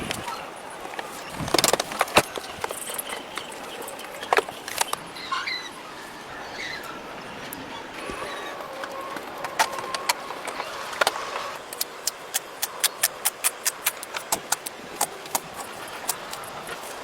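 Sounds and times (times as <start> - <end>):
sharp clicks: 11.7 - 17.0.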